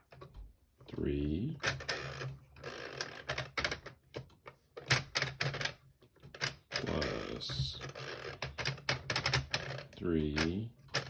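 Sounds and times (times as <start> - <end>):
plastic mechanism clicking and clacking: 1.6 - 7.2, 7.8 - 11.0.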